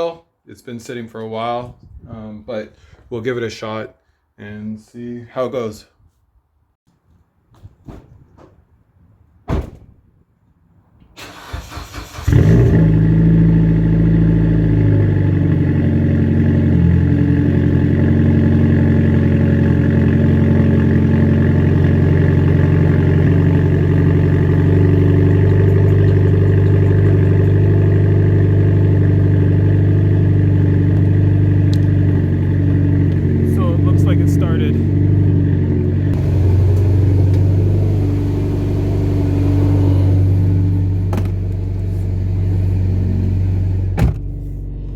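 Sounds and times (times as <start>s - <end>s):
car engine cranking and idling: 11.0s - 44.9s.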